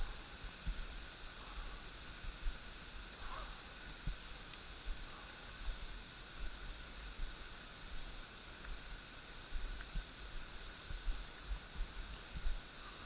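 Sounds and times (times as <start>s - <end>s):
distant rushing water: 0.0s - 13.0s.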